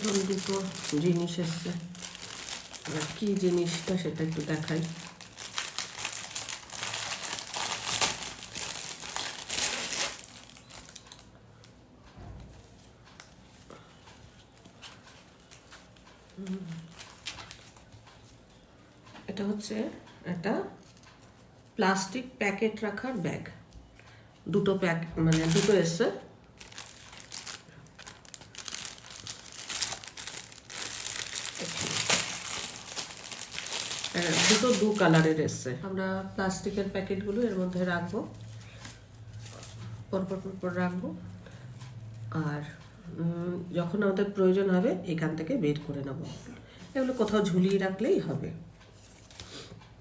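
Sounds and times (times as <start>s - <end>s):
parcel packaging rustling: 0.0s - 11.3s, 14.5s - 18.1s, 25.2s - 35.6s.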